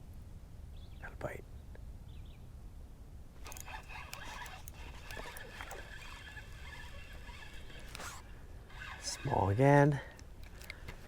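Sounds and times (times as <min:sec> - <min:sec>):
fishing reel clicking and whining: 0:03.4 - 0:11.0.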